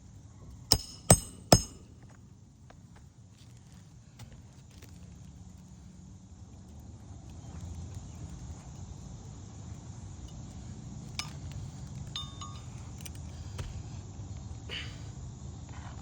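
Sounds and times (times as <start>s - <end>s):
light metallic clinks: 0.7s - 2.0s, 10.2s - 13.3s.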